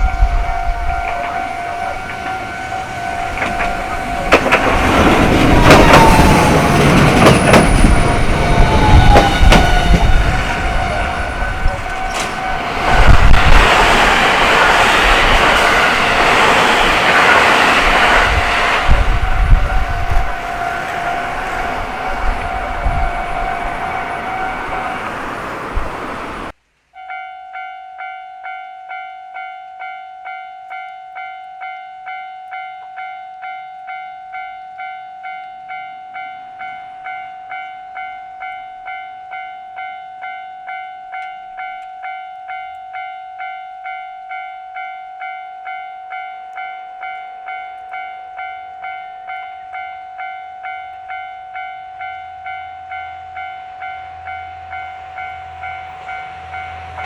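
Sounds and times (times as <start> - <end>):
train running loudly: 0.0 - 26.5, 52.9 - 57.0
low rumble of approaching train: 0.0 - 26.6, 40.6 - 57.0
railroad crossing bell ringing: 0.0 - 57.0.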